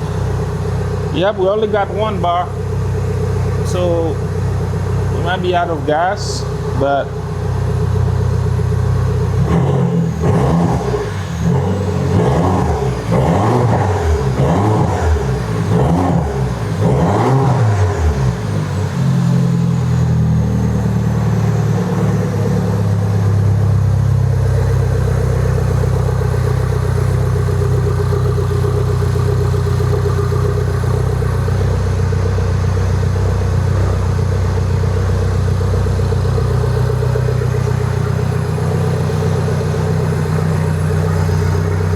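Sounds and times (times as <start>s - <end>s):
car engine idling: 0.0s - 41.9s
car engine revving: 0.0s - 41.9s.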